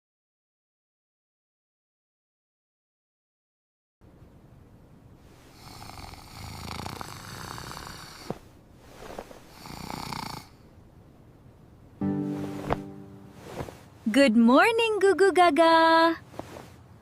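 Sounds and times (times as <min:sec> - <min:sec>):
long drawn-out snores: 0:05.5 - 0:08.4, 0:09.4 - 0:10.6.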